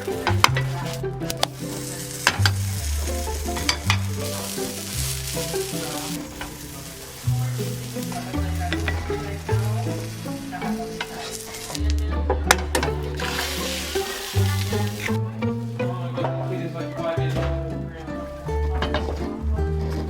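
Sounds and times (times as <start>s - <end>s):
crackle of clicks and hiss: 0.0s - 15.2s
low bass line music: 0.0s - 20.0s.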